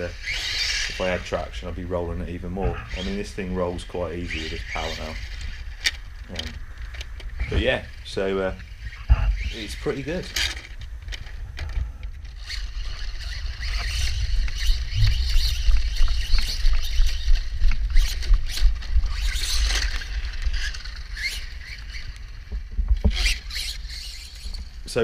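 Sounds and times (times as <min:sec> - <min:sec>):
toy truck motor whining: 0:00.0 - 0:25.0
heavy low rumble: 0:00.9 - 0:10.1.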